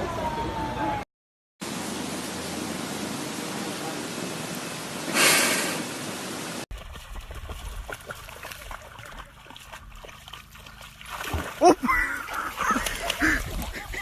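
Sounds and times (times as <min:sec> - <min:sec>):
steady rushing hiss: 0:01.6 - 0:06.7.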